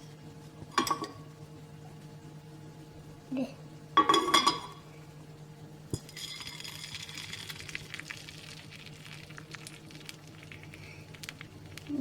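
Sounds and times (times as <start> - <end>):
batter sizzling on a pan: 6.2 - 12.0
small crackling pops: 7.5 - 12.0.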